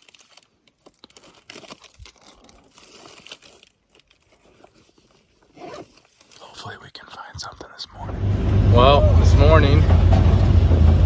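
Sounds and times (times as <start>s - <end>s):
small clicks and crunches: 0.0s - 6.8s
rustling and crinkling: 0.0s - 7.5s.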